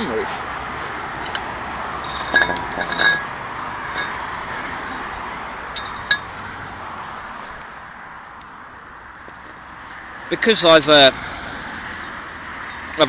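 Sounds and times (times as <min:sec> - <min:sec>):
small metallic clinks: 0:01.0 - 0:03.3, 0:03.9 - 0:04.1, 0:04.8 - 0:05.2, 0:05.8 - 0:06.3, 0:12.0 - 0:13.0.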